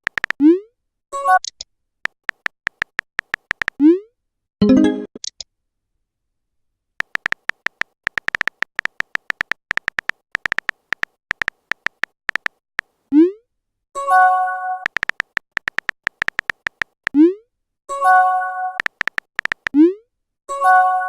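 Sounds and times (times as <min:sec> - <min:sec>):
keyboard tap clicks: 0:00.0 - 0:00.4, 0:01.5 - 0:03.8, 0:07.0 - 0:12.6, 0:14.9 - 0:17.2, 0:18.8 - 0:19.8
phone notification chime: 0:04.6 - 0:05.1.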